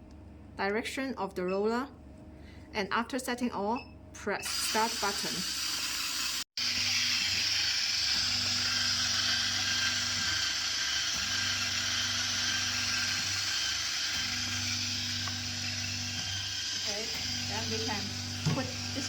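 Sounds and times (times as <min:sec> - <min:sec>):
vacuum pump humming: 0:06.6 - 0:19.0.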